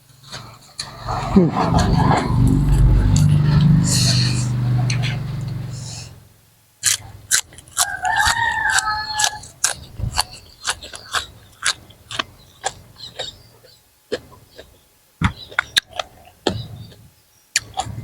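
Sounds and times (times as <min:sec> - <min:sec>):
rooster crowing: 0:07.8 - 0:09.4.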